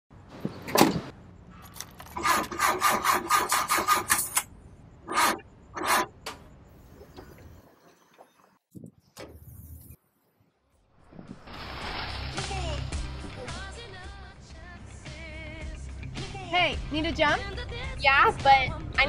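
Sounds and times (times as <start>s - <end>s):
rasping scraping strokes: 2.1s - 4.4s, 5.1s - 6.2s.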